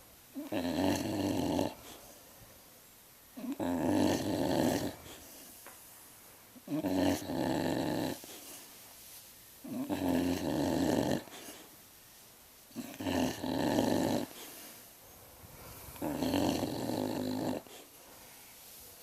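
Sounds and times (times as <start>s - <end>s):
pet snoring: 0.3s - 2.1s, 3.4s - 5.4s, 6.7s - 8.6s, 9.6s - 11.7s, 12.7s - 14.8s, 15.6s - 18.0s.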